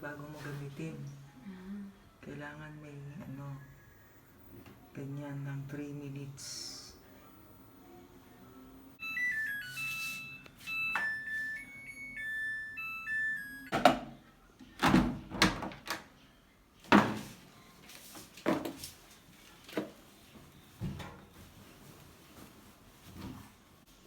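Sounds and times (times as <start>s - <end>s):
washing machine beeping tune: 9.0s - 14.0s.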